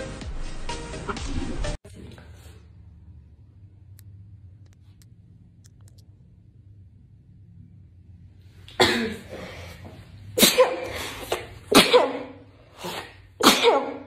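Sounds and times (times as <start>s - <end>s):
person sneezing: 8.7s - 9.8s, 10.4s - 14.0s.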